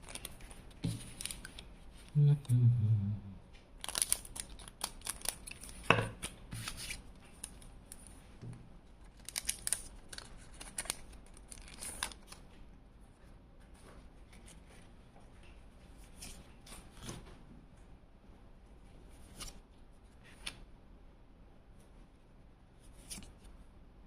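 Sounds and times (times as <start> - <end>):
foil wrappers crinkling: 0.0 - 1.6, 3.8 - 8.1, 9.0 - 12.5.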